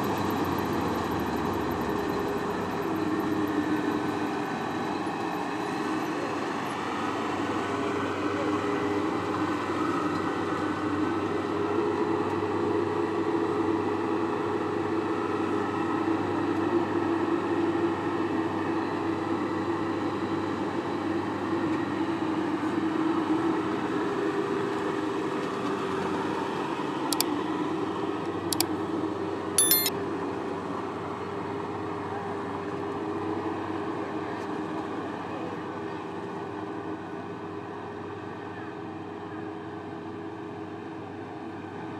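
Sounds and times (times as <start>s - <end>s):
sharp clicks: 29.6s - 29.9s.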